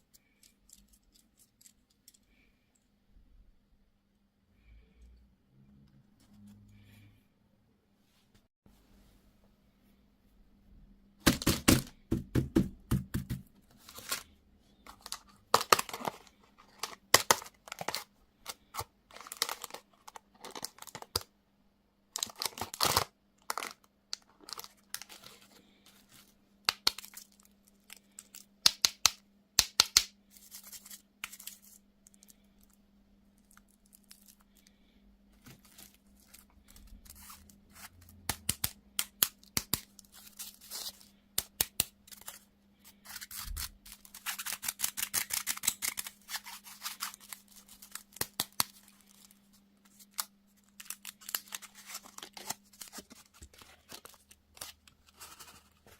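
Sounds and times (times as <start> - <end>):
candy wrappers crinkling: 14.9 - 21.3, 22.1 - 29.1, 33.4 - 55.9.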